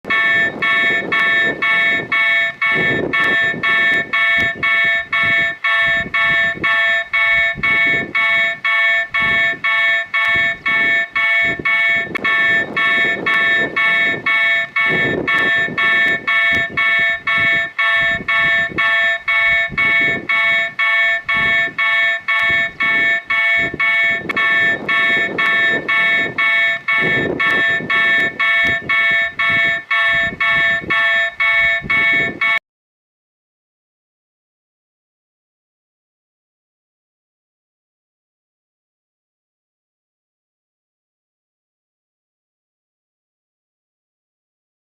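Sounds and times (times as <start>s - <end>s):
level crossing warning bell: 0.1s - 32.6s.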